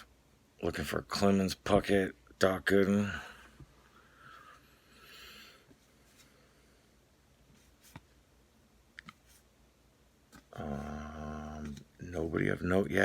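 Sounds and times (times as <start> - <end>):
soft clicks of cards: 8.9 - 9.4.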